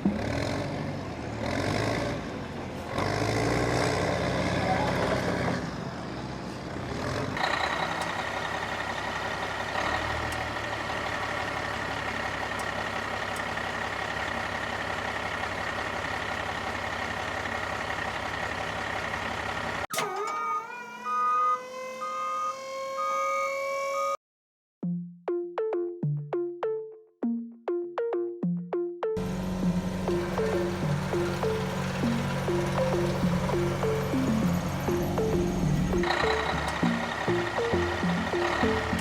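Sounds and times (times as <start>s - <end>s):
low engine-like hum: 4.2s - 20.2s, 29.2s - 39.0s
synthesizer music: 24.8s - 39.0s
steady high tone: 29.5s - 39.0s.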